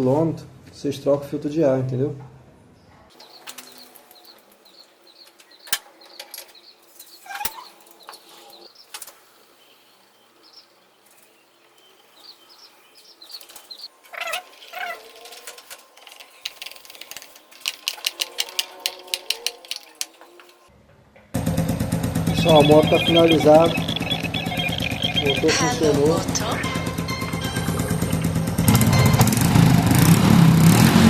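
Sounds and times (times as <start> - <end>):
small birds chirping: 3.1 - 20.7, 22.2 - 28.6
wings fluttering: 3.2 - 9.5, 11.0 - 20.7, 22.1 - 26.3
fast run of ticks: 13.2 - 20.7, 22.3 - 25.5
metallic tool clicks: 16.0 - 20.6.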